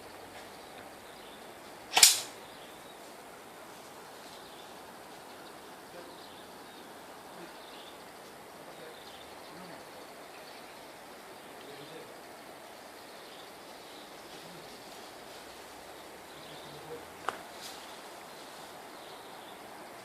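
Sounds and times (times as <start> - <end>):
faint background hiss: 0.0 - 20.0
airsoft gun shot: 1.9 - 2.4.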